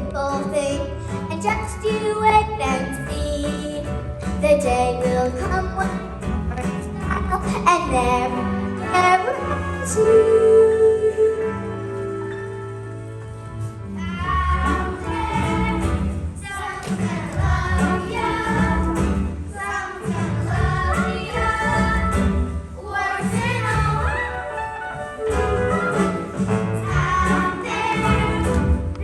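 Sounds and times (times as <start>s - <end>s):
instrumental accompaniment with bass: 0.0s - 29.0s
children singing: 14.0s - 29.0s.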